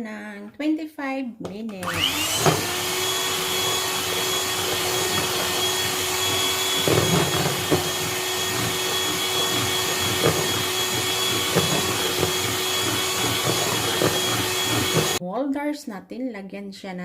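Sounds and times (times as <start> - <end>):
electric mixer whining: 1.8 - 15.2.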